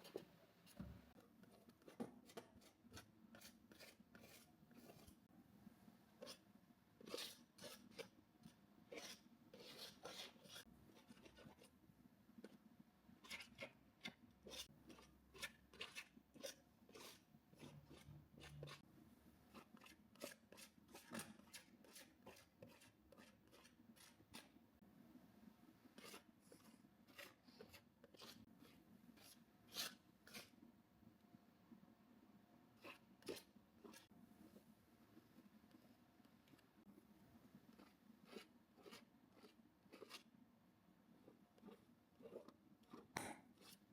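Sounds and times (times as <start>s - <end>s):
paintbrush scratching on canvas: 1.5s - 5.2s, 26.0s - 30.6s, 37.7s - 40.3s, 41.6s - 43.9s.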